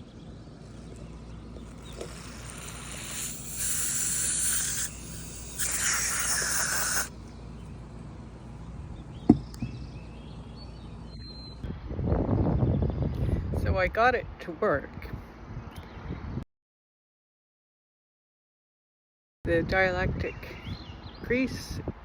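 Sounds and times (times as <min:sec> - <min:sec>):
aerosol spray hissing: 0:00.7 - 0:07.2.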